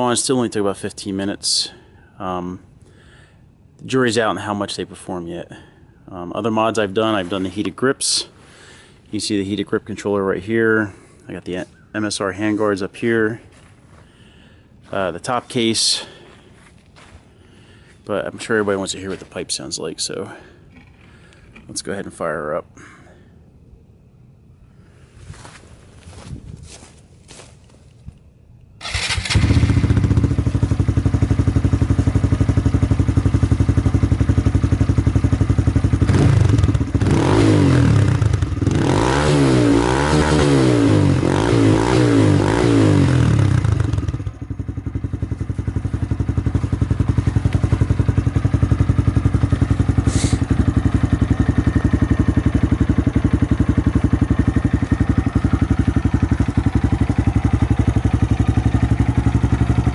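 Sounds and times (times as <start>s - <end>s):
motorcycle engine idling: 28.8s - 59.9s
motorcycle engine revving: 28.8s - 59.9s.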